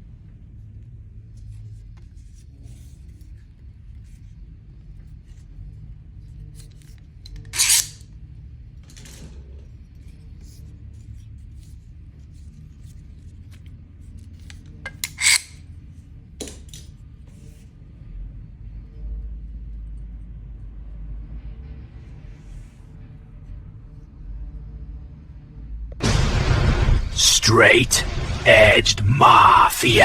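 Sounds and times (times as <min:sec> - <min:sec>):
metal scraping: 0:14.9 - 0:15.6.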